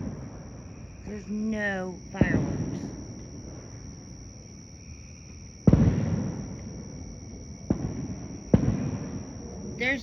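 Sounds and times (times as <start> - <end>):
distant fireworks bangs: 0.0 - 1.3, 2.1 - 3.9, 5.6 - 10.0.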